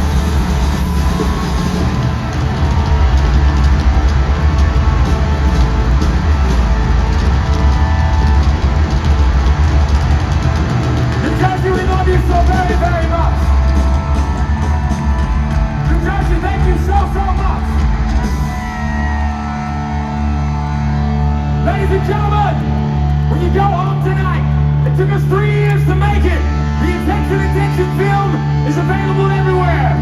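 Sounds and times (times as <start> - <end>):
live hard rock band: 0.0 - 30.0.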